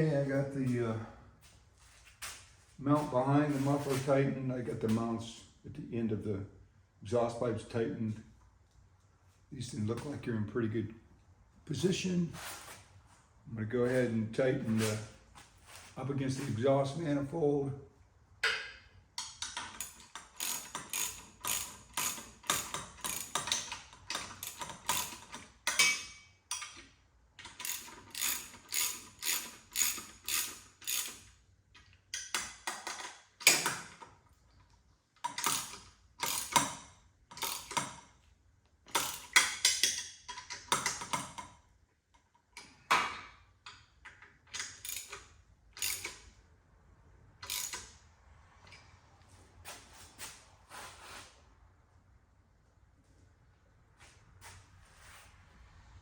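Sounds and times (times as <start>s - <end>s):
ratchet wrench clicking: 19.2s - 25.9s, 26.5s - 31.3s, 35.3s - 38.0s, 38.9s - 41.3s, 44.1s - 46.3s, 47.4s - 48.0s.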